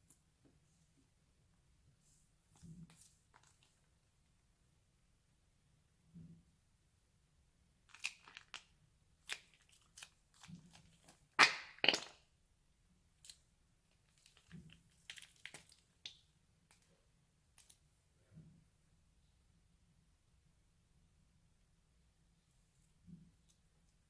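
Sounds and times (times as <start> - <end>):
crunchy slime crackling and popping: 7.9 - 11.8.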